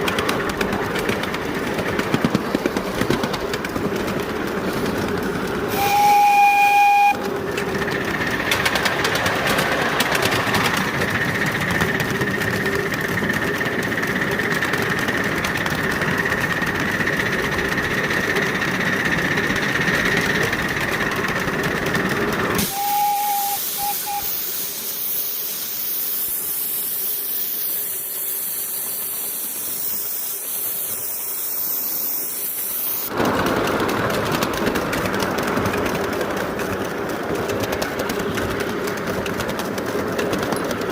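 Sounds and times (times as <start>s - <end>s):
steam hissing: 5.6s - 15.2s, 22.6s - 33.2s
steam whistle: 5.7s - 7.3s, 22.6s - 24.8s.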